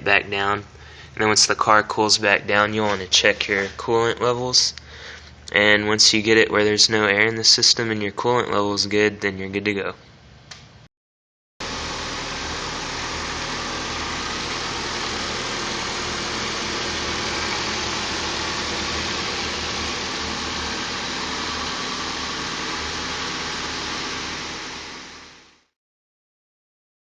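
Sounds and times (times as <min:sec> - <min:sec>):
car engine idling: 0:11.6 - 0:25.4.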